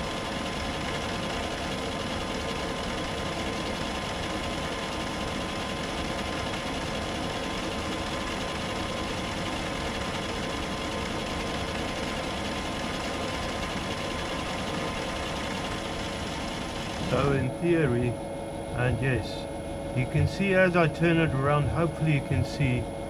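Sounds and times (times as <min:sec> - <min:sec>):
metalworking lathe running: 0:00.4 - 0:18.2.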